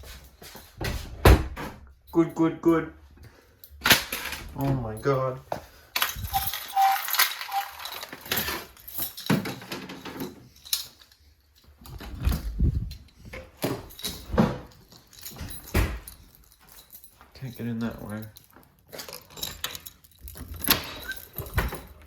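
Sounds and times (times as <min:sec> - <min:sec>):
clicks rattles and knocks from handling: 0:06.0 - 0:22.0.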